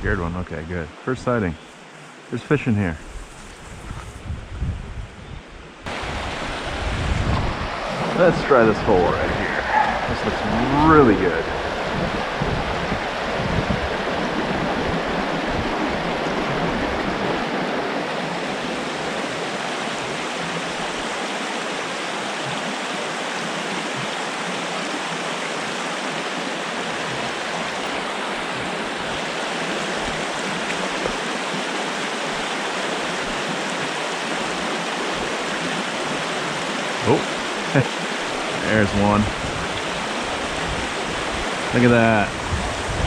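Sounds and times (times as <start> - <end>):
stream water rushing: 0.0 - 3.8, 5.8 - 43.0
wind rumble on microphone: 3.0 - 21.2, 38.5 - 43.0.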